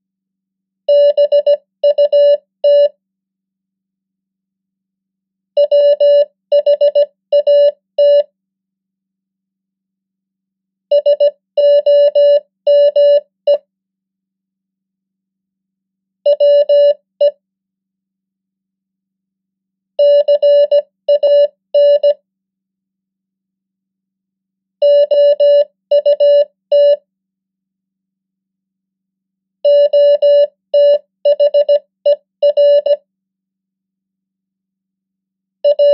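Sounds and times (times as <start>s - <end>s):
morse code beeps: 5.6s - 8.2s, 16.3s - 17.0s, 20.0s - 22.2s, 24.8s - 27.0s, 29.7s - 33.0s, 35.6s - 35.9s.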